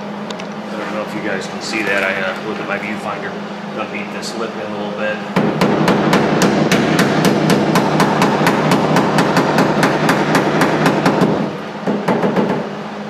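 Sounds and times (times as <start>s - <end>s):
hammer striking sheet metal: 5.4s - 12.6s.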